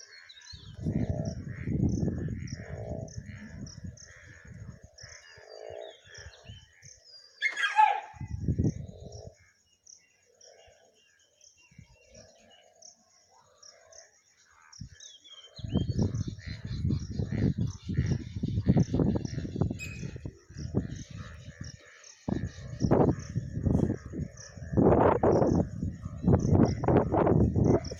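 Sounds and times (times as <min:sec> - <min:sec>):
birds chirping: 0:00.0 - 0:27.9
loud falling bird call: 0:07.4 - 0:08.2.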